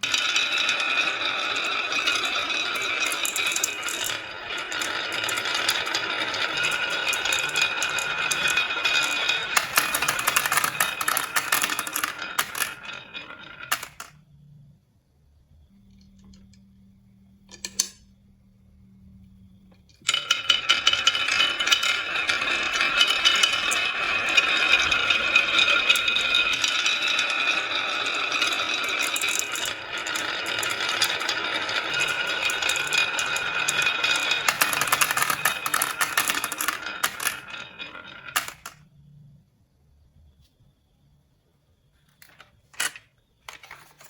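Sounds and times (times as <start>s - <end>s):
marbles rattling down track: 0.0s - 14.2s, 20.1s - 38.9s.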